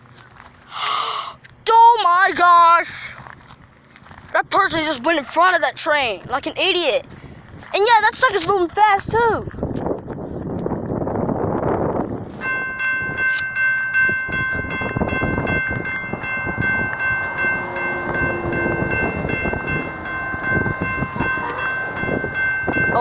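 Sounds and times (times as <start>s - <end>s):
train rumbling and clattering: 1.5s - 23.0s
locomotive air horn: 17.3s - 22.3s.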